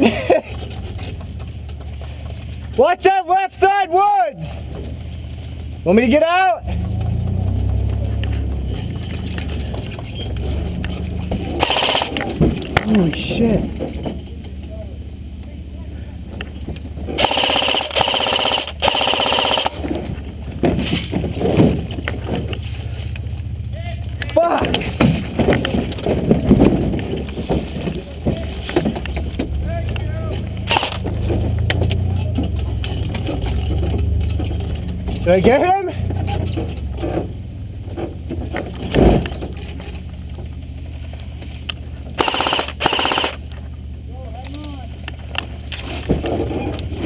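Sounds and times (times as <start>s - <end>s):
low engine hum: 0.0s - 2.9s, 4.4s - 47.0s
airsoft gun firing full auto: 11.6s - 12.1s, 17.2s - 19.8s, 30.7s - 31.0s, 42.2s - 43.4s.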